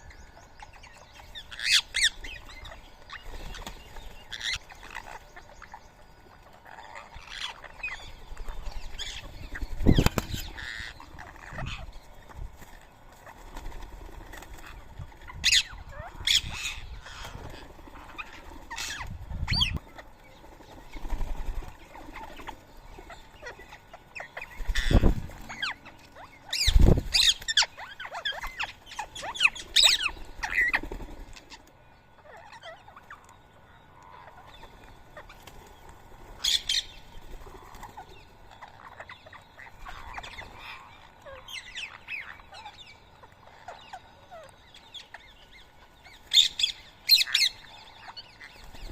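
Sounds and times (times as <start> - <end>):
parakeets giving shrill calls: 0.9 - 5.8, 6.6 - 12.0, 15.2 - 19.9, 22.1 - 31.0, 38.6 - 48.9.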